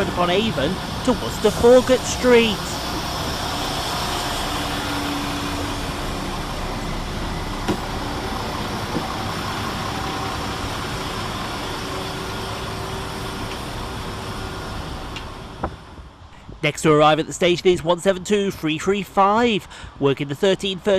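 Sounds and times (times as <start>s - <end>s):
diesel train engine and wheels: 0.0s - 20.9s.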